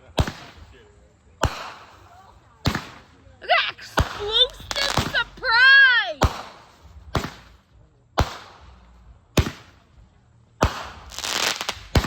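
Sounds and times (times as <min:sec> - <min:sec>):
fireworks bangs: 0:00.0 - 0:00.8, 0:01.4 - 0:07.6, 0:08.2 - 0:09.9, 0:10.6 - 0:12.0
fireworks hissing crackle: 0:00.0 - 0:10.0, 0:10.6 - 0:12.0.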